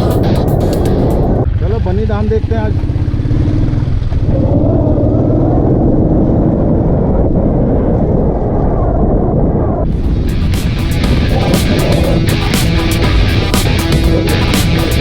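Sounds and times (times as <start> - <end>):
music: 0.0 - 1.4, 9.9 - 15.0
motorcycle engine rumbling: 0.0 - 6.9, 9.9 - 15.0.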